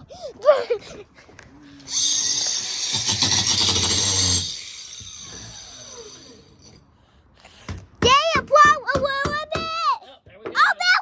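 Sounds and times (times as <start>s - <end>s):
small power tool whining: 1.9s - 6.8s.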